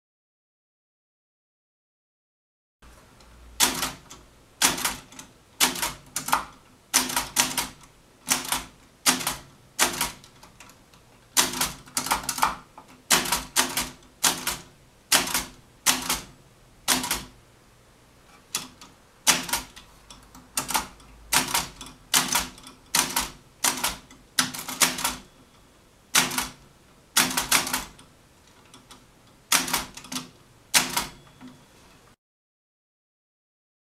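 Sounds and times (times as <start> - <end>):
typewriter clacking: 3.6 - 10.8, 11.4 - 16.3, 16.9 - 17.3, 18.5 - 25.2, 26.1 - 26.6, 27.2 - 28.0, 28.6 - 31.2.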